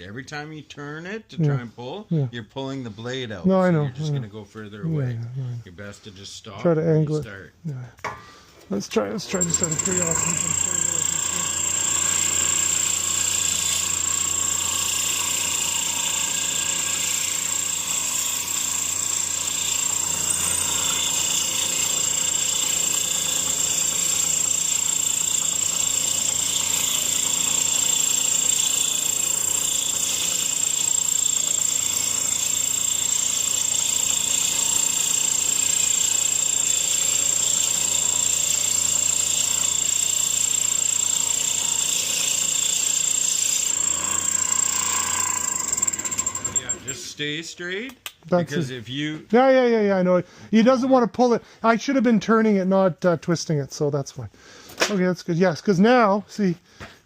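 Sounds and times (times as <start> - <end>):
band saw whining: 9.2 - 47.4.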